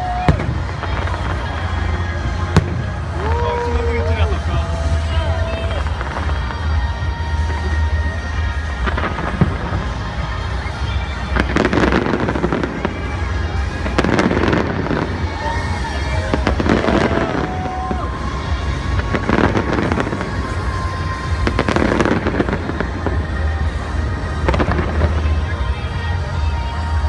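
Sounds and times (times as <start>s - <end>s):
constant low rumble: 0.0s - 27.0s
fireworks bursting with sharp bangs: 0.0s - 27.0s.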